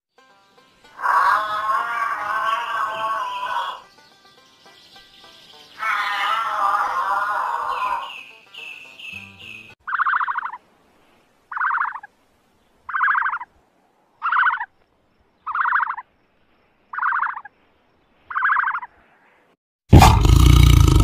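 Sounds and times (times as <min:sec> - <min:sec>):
animal rasping calls: 0:01.0 - 0:03.8, 0:05.8 - 0:08.1, 0:09.9 - 0:10.6, 0:11.5 - 0:12.1, 0:14.2 - 0:14.7, 0:15.5 - 0:16.0, 0:17.0 - 0:17.5, 0:18.3 - 0:18.9.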